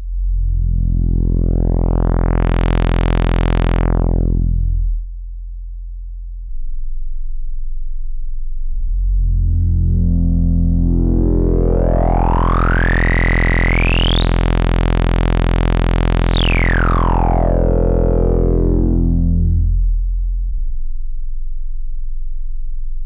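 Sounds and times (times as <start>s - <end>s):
resonant filter sweeping synth drone: 0.2s - 4.9s, 8.8s - 20.2s.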